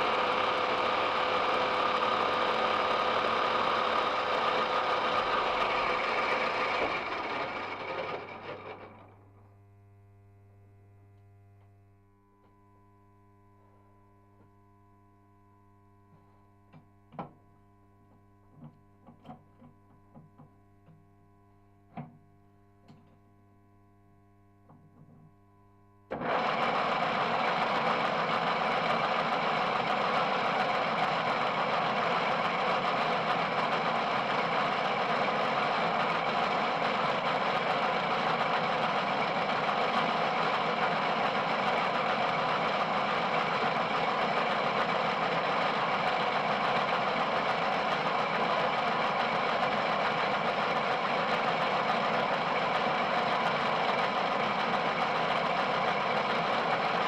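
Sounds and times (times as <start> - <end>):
lathe motor whining and humming: 0.0 - 9.3, 26.1 - 57.0.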